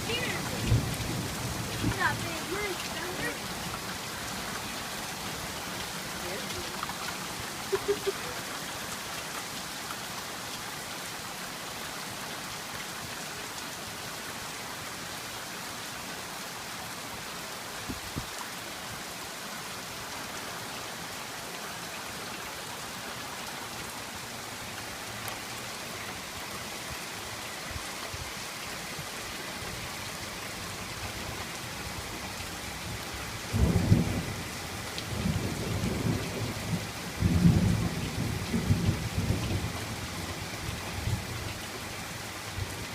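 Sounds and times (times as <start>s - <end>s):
thunder rumbling: 0.0s - 3.4s, 33.5s - 39.8s
heavy rain hissing: 0.0s - 42.9s.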